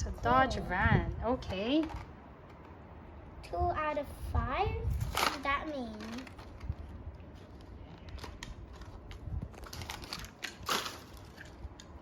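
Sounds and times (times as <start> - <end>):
blister pack being torn open: 7.4 - 11.9.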